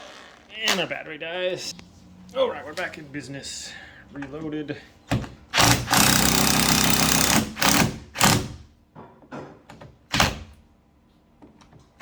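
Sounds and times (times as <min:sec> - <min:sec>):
impact driver driving screw: 0:05.5 - 0:08.6.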